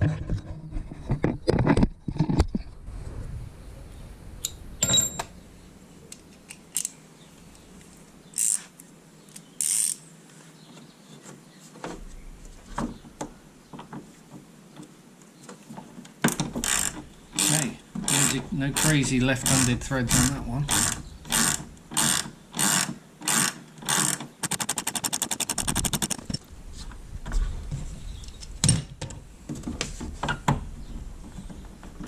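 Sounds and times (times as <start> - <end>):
hand ratchet clicking: 9.6 - 10.0, 16.3 - 26.2.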